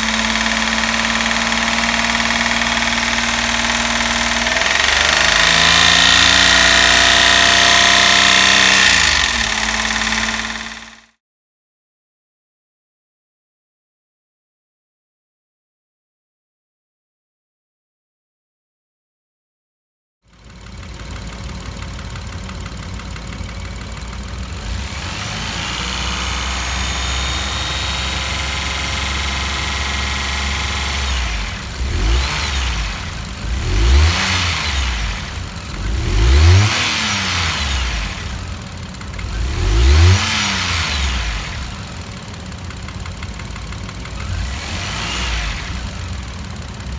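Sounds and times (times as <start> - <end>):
engine revving and idling: 0.0 - 11.1, 20.3 - 46.9
light engine knock: 0.0 - 11.1, 20.3 - 31.8, 37.7 - 39.7, 41.1 - 44.6.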